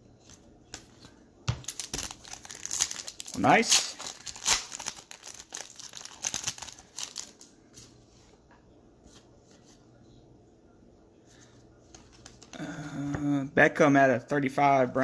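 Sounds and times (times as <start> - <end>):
trading cards rustling: 0.7 - 7.9.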